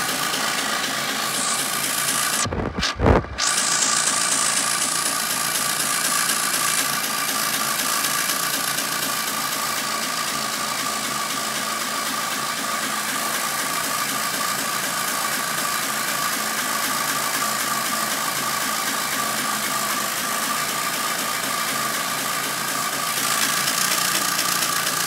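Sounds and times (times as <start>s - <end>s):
steady whine: 0.0s - 8.1s
tractor engine running: 0.0s - 25.0s.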